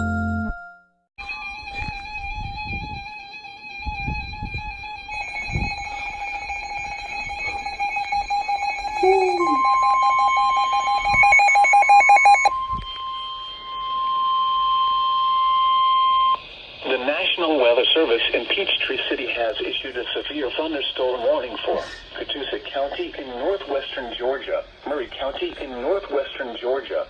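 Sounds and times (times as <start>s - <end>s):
wavering electronic alarm: 1.2s - 18.1s
steady warning alarm tone: 4.0s - 26.0s.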